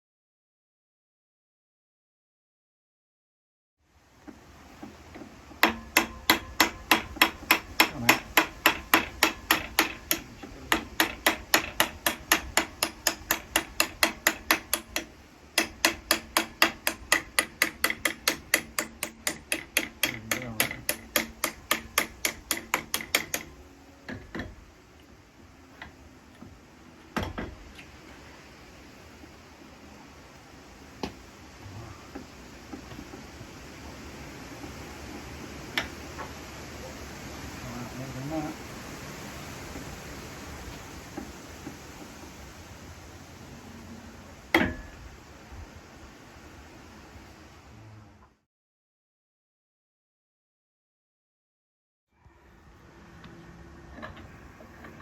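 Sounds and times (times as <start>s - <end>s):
single knocks: 4.8s - 24.6s
hammer blows on metal: 5.6s - 24.6s.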